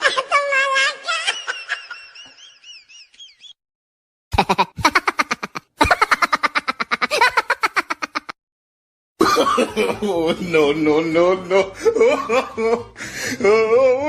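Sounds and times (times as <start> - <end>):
staccato laughing sound effect: 4.3 - 8.4.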